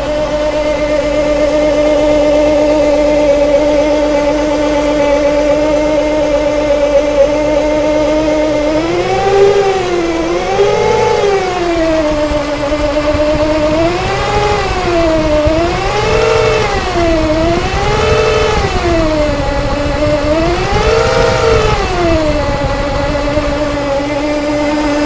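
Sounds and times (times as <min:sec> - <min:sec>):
car engine revving: 0:00.0 - 0:25.0
whine rising and falling in pitch: 0:00.0 - 0:25.0.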